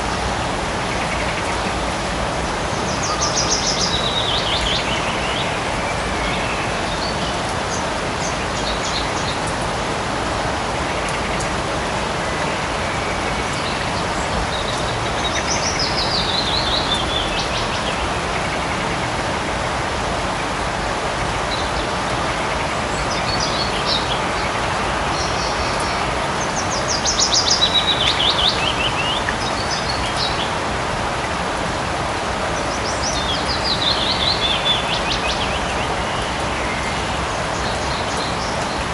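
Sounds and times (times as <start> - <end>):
light rain falling: 0.0 - 38.9
birds calling: 32.4 - 38.9.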